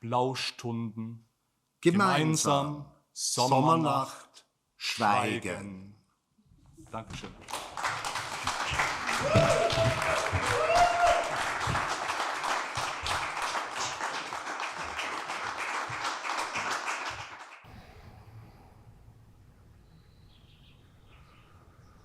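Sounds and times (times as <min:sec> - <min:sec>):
audience applauding: 0:07.4 - 0:17.7.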